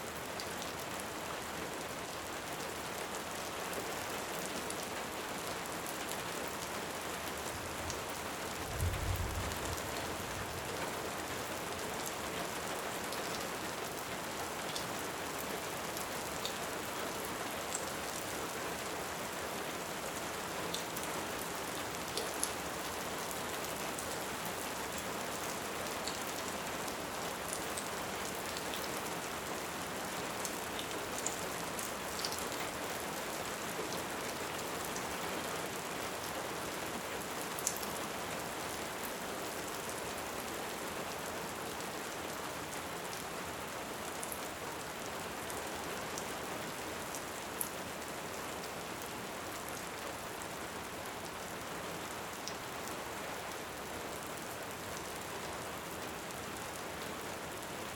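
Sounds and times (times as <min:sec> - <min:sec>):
steady rain: 0:00.0 - 0:57.9.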